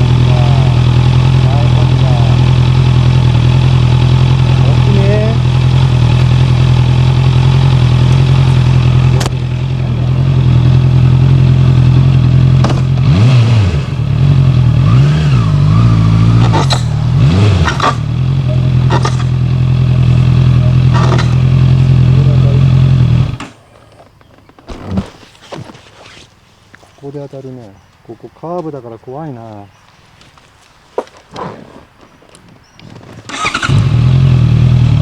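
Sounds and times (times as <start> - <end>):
motorcycle engine running: 0.0 - 23.6, 33.0 - 35.0
sharp clattering clacks: 16.4 - 21.9.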